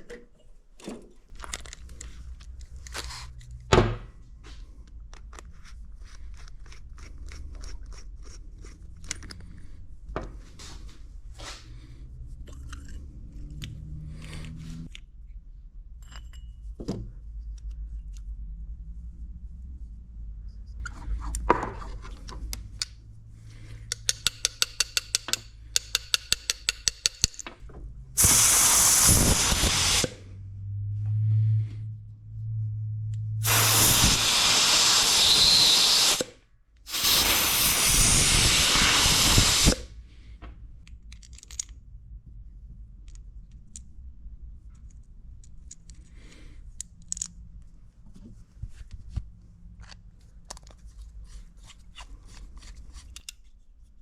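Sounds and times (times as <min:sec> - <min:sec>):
small handling sounds: 0:00.0 - 0:03.7, 0:44.7 - 0:54.0
hissing spray: 0:28.2 - 0:30.2, 0:33.4 - 0:36.3, 0:36.9 - 0:39.9.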